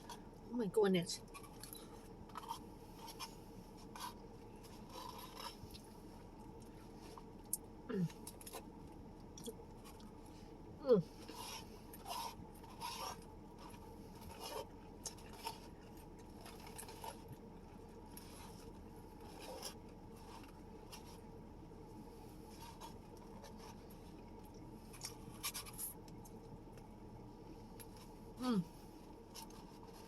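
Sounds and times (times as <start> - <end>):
chewing: 1.2 - 10.3, 11.2 - 21.2, 22.5 - 26.9.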